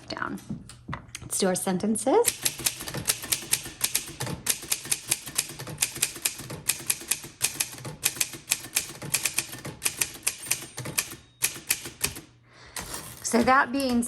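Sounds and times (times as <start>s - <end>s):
typewriter keystroke clicks: 2.3s - 12.3s.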